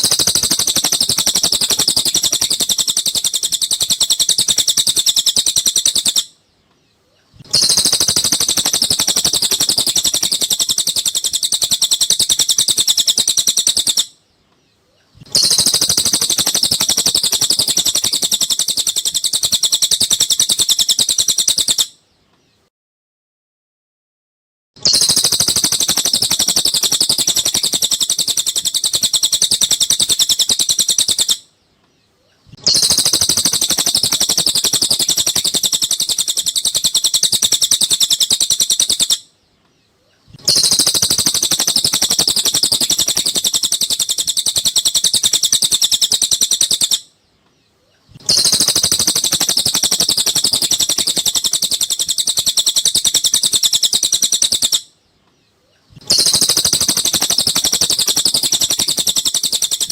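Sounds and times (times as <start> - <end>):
songbird chirping: 0.0 - 22.7, 24.8 - 59.9.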